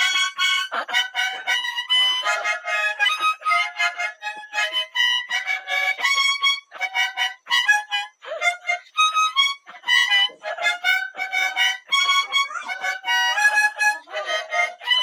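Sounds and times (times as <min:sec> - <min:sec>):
harmonica chordal phrases: 0:00.0 - 0:15.0.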